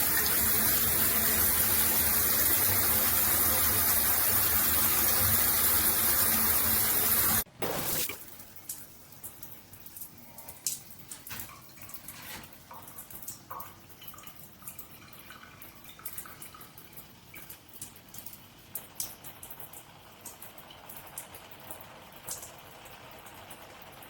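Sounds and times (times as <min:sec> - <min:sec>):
water dripping from shower head: 0:08.1 - 0:23.7.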